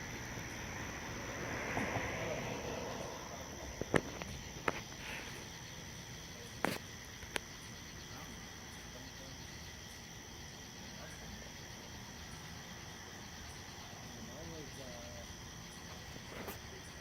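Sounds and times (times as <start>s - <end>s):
crickets chirping: 0.0s - 17.0s.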